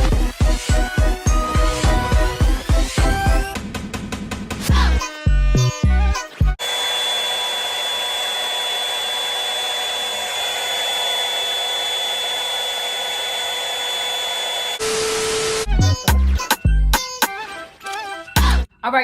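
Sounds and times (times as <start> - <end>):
hair dryer blowing with whine: 6.6 - 15.7.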